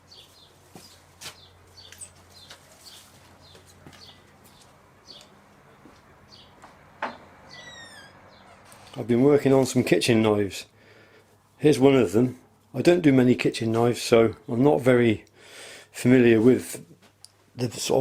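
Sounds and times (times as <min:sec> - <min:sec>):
small birds chirping: 0:00.0 - 0:09.1
falling bird trill: 0:07.5 - 0:08.9.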